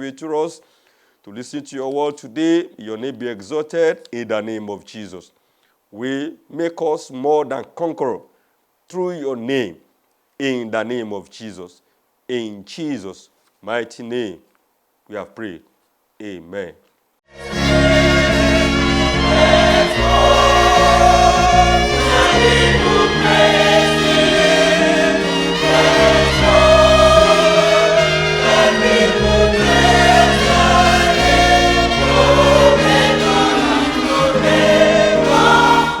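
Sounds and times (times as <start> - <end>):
gospel choir singing: 17.3 - 36.0
instrumental accompaniment with bass: 17.3 - 36.0.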